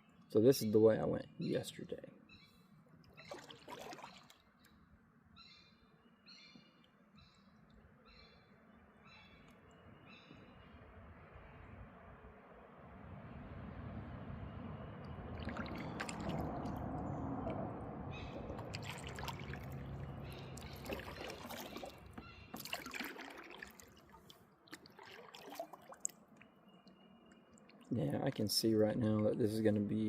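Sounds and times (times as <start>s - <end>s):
water splashing around kayak: 3.1s - 4.6s, 15.1s - 28.7s.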